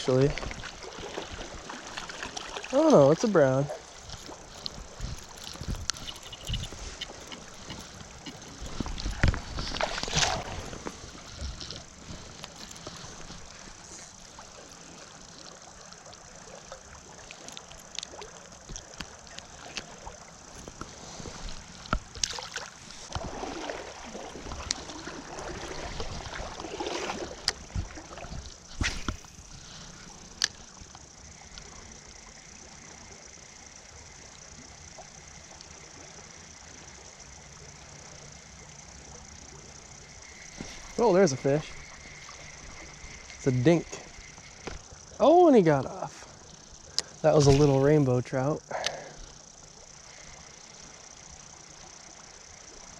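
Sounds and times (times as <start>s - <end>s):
water sloshing: 0.0s - 31.1s, 39.3s - 48.2s
river flowing: 0.0s - 52.9s.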